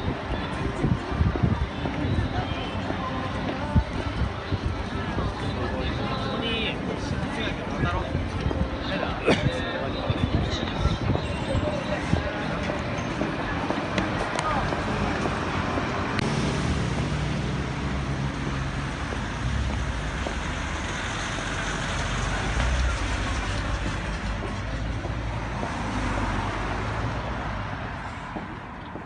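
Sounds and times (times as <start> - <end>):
road noise: 0.0 - 29.0
vehicle engine rumble: 9.4 - 29.0.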